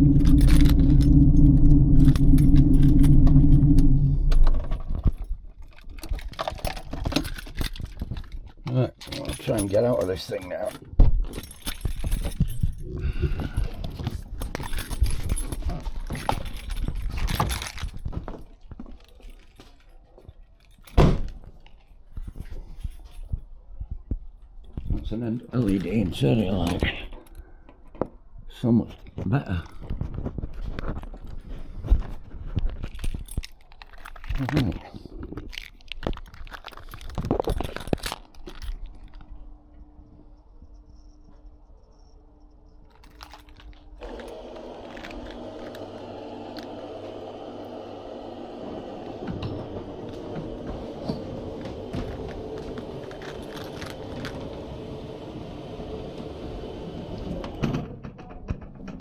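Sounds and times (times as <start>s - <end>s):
person climbing out of car: 0.0s - 10.2s, 10.8s - 24.9s, 49.2s - 56.8s
handling clicks and rustles: 0.0s - 28.2s, 28.9s - 39.9s, 42.8s - 47.3s, 49.2s - 55.1s.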